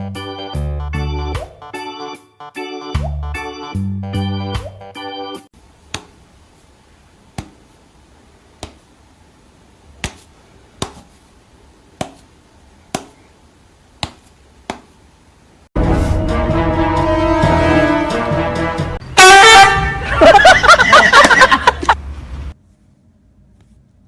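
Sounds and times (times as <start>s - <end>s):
music: 0.0s - 5.5s, 15.8s - 20.0s
faint steady hiss: 5.6s - 15.8s
sharp taps: 5.8s - 6.4s, 7.3s - 7.8s, 8.5s - 9.0s, 9.9s - 11.2s, 12.0s - 13.3s, 14.0s - 15.0s.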